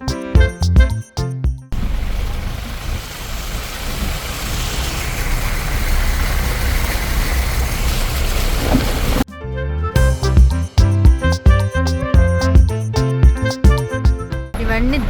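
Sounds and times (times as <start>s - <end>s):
rushing noise: 1.7s - 9.2s
vehicle engine and road rumble: 1.7s - 9.3s.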